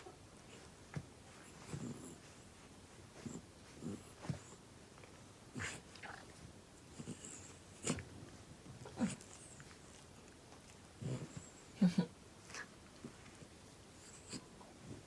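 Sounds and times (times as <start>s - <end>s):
dog snorting: 1.4s - 2.4s, 6.9s - 8.1s, 11.0s - 11.6s.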